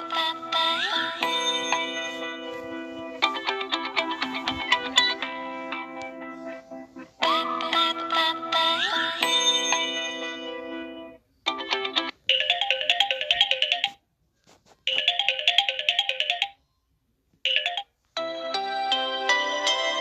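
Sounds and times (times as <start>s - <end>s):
phone ringtone snippets: 0.1s - 6.6s, 9.0s - 14.0s, 14.9s - 16.7s, 17.5s - 20.0s.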